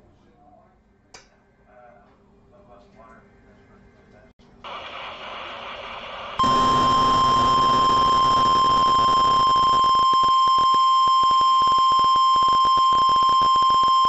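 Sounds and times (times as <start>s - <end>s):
radio hiss and crackle: 4.6s - 10.7s
steady high alarm beep: 6.4s - 14.0s.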